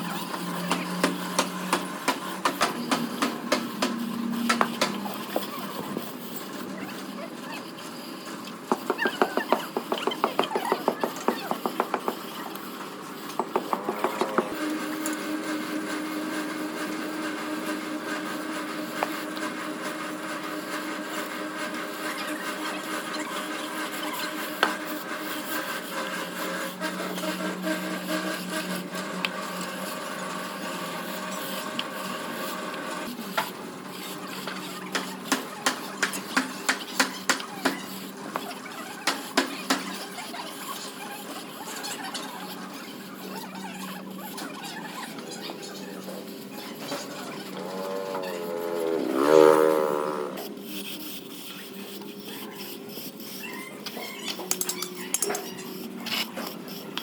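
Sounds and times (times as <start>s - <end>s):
power tool whining: 8.5s - 37.4s, 45.1s - 50.7s.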